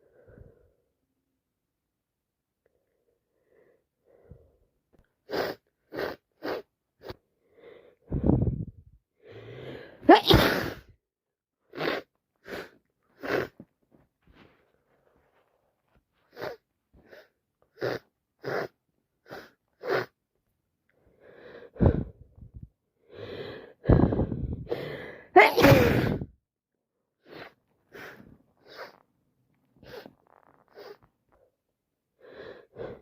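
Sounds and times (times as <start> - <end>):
person sniffling: 5.2 - 7.2, 9.5 - 10.9, 23.2 - 26.3, 27.2 - 29.0, 29.8 - 31.1
person sneezing loudly: 10.0 - 10.9, 25.4 - 26.3
person gasping: 21.2 - 26.3.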